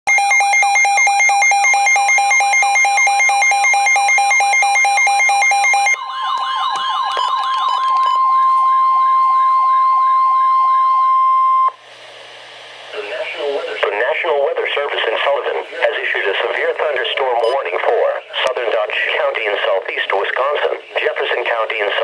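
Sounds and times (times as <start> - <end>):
alternating electronic alarm tone: 0.1 - 11.8
siren wailing: 0.1 - 11.8.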